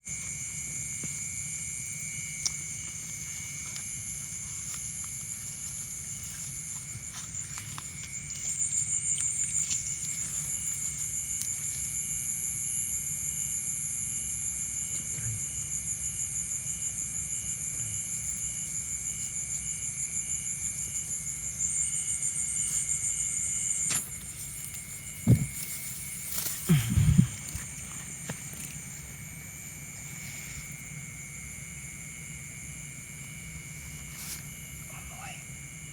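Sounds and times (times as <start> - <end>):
insects trilling: 0.0 - 35.9
low thump: 25.2 - 25.8.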